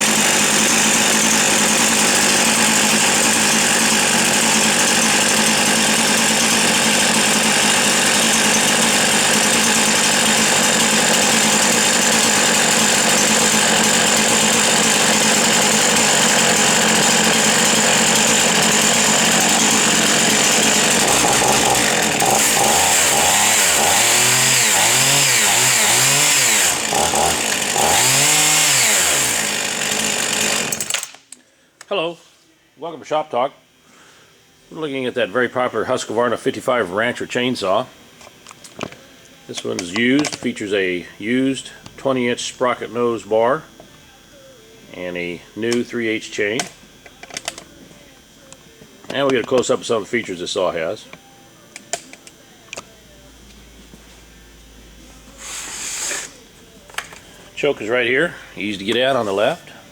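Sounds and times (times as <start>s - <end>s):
chainsaw revving: 0.0s - 31.2s, 55.4s - 56.4s, 57.6s - 59.8s.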